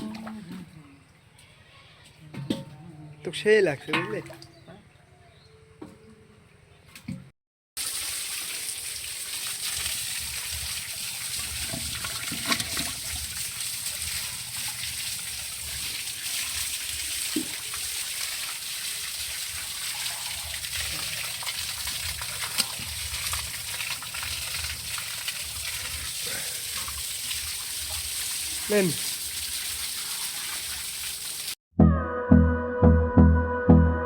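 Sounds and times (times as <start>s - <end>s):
water splashing and trickling: 0.0s - 4.8s, 6.9s - 31.6s.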